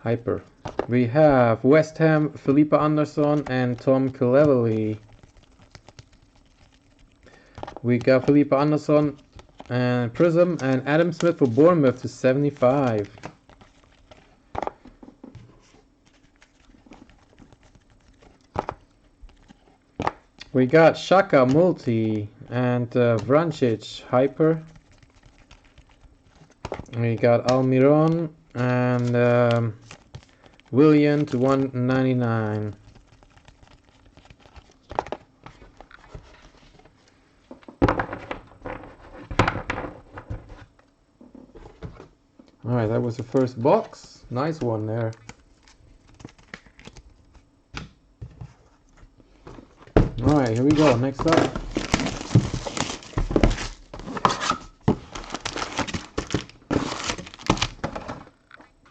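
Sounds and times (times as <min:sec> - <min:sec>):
cards clicking and tapping: 0:07.4 - 0:15.2.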